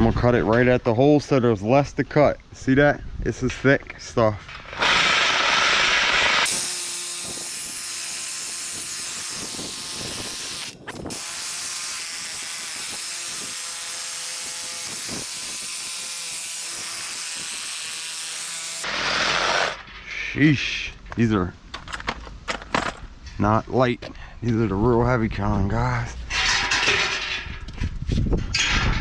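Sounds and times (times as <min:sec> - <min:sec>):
power saw cutting steel: 0:04.6 - 0:19.9.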